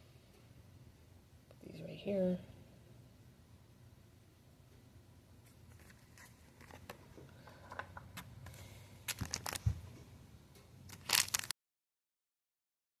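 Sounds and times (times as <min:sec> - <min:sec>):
faint low room hum: 0:00.0 - 0:11.5
foil wrappers crinkling: 0:09.1 - 0:09.7, 0:10.9 - 0:11.5.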